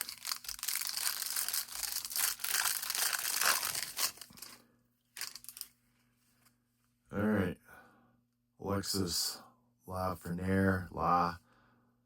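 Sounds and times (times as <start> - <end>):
foil wrapper tearing and crinkling: 0.0 - 4.6, 5.2 - 5.7.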